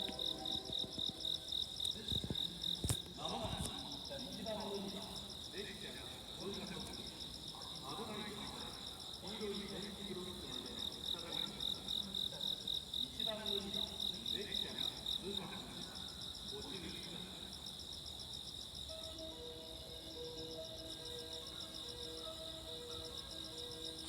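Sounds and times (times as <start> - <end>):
faint distant voices: 0.0 - 18.2
crickets chirping: 0.0 - 24.0.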